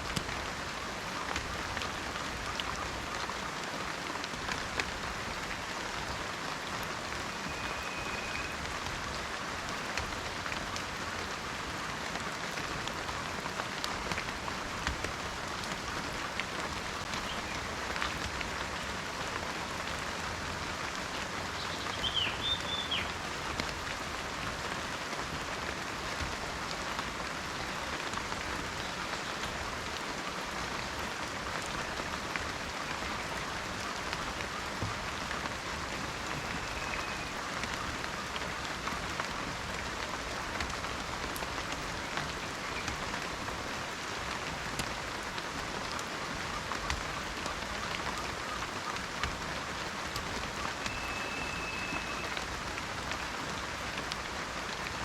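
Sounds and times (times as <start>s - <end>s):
rain falling in forest: 0.0s - 55.0s
faint whistle: 7.3s - 8.6s, 36.5s - 37.3s, 50.8s - 52.4s
bird chirping: 21.6s - 23.1s, 50.9s - 52.3s.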